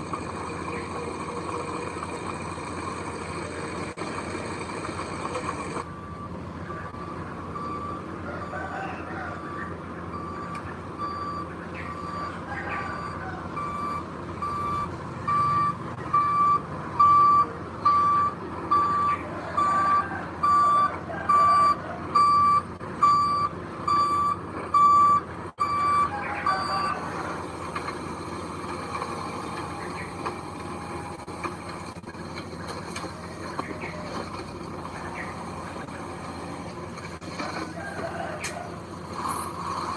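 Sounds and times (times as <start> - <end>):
reversing alarm beeping: 0.0 - 27.6
diesel engine rumble: 0.0 - 39.9.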